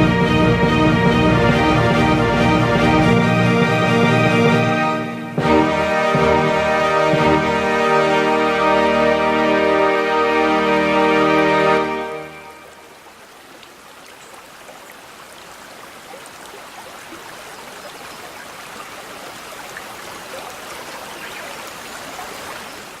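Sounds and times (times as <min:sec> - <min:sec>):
brook babbling: 0:05.7 - 0:23.0.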